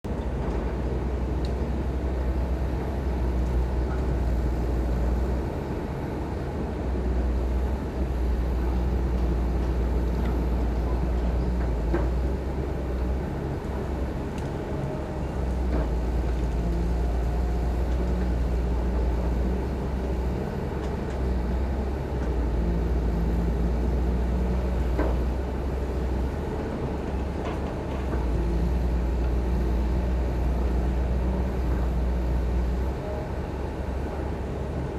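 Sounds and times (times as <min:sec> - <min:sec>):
diesel engine rumble: 0:00.0 - 0:34.9.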